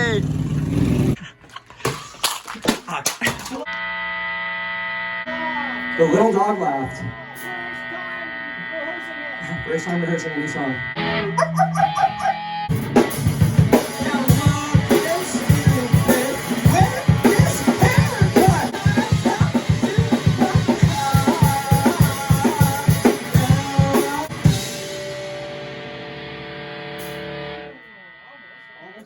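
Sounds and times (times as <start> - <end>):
guitar: 2.6 - 29.0
drum kit beat: 11.1 - 25.9.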